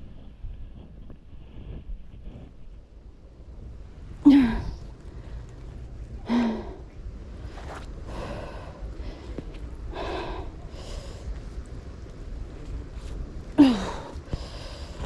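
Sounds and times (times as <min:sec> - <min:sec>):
steady low rumble: 0:00.0 - 0:15.0
person breathing hard: 0:06.2 - 0:11.5, 0:13.6 - 0:15.0.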